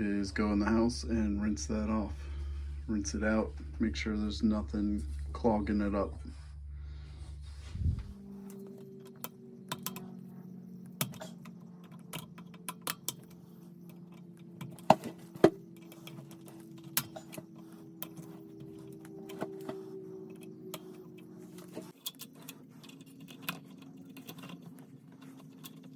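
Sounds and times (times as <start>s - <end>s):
low electrical hum: 0.0s - 25.9s.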